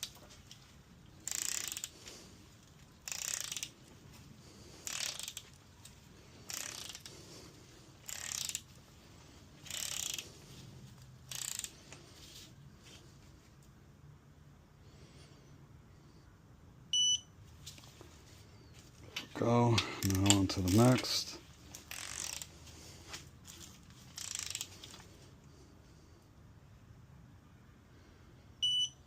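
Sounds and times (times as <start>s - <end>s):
ratchet wrench clicking: 1.2s - 2.0s, 3.0s - 3.8s, 4.8s - 5.5s, 6.5s - 7.1s, 8.0s - 8.7s, 9.6s - 10.2s, 11.3s - 11.8s, 21.8s - 22.5s, 24.1s - 24.7s.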